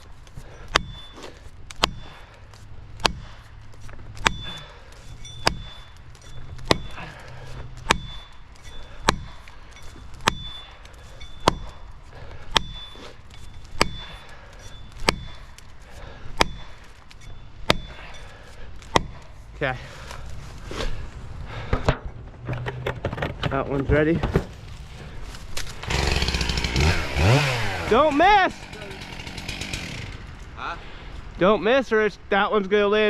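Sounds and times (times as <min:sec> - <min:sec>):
hammer striking wedge with ring: 0:07.9 - 0:10.6.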